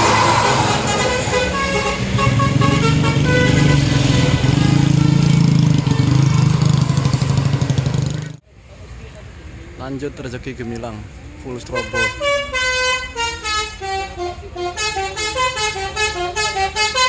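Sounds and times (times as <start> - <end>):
musical bus horn tune: 0.0 - 7.4, 11.7 - 17.0
bus engine drone: 0.0 - 9.8.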